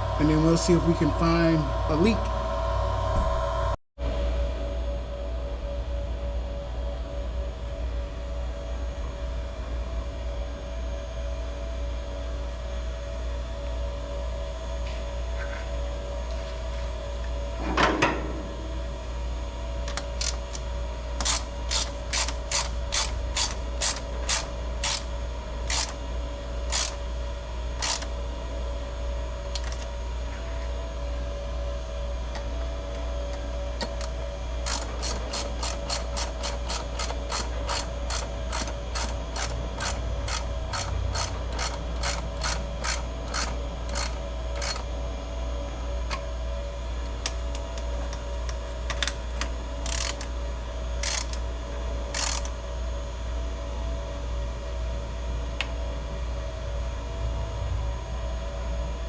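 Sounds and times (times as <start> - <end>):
steady low hum: 0.0 - 59.0
ratchet clicking: 19.9 - 20.6, 21.2 - 26.0, 26.7 - 27.0, 27.8 - 28.1, 33.8 - 44.8, 49.8 - 50.3, 51.0 - 51.4, 52.1 - 52.5.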